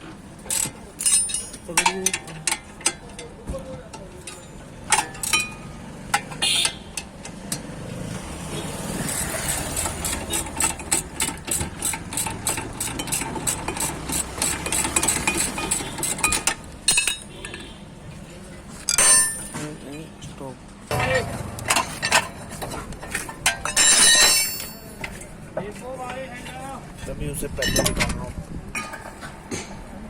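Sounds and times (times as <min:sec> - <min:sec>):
sharp metal clinks: 0:01.0 - 0:02.2, 0:18.9 - 0:19.6, 0:23.6 - 0:25.0
fast even wheel clicking: 0:09.0 - 0:16.7.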